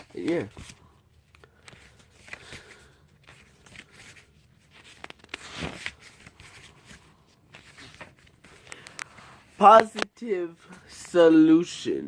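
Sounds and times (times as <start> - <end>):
book pages rustling: 0.0 - 11.3.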